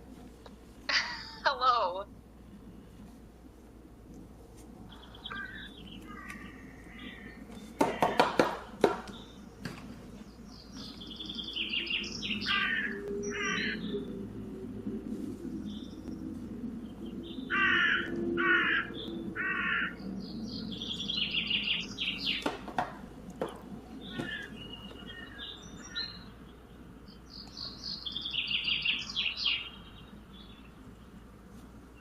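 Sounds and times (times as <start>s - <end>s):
high bird chirping: 4.9s - 8.4s, 10.2s - 14.2s, 15.6s - 22.6s, 23.9s - 30.8s
harsh caw-like bird calls: 5.0s - 9.3s, 11.1s - 14.1s, 17.2s - 22.6s, 24.0s - 26.3s.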